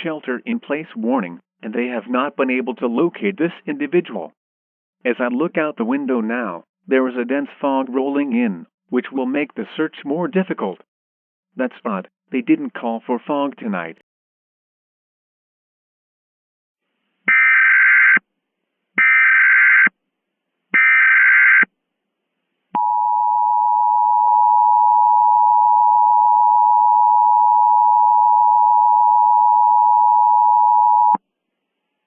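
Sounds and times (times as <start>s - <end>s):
two-tone alarm: 17.3s - 18.2s, 19.0s - 19.9s, 20.8s - 21.7s, 22.8s - 31.2s.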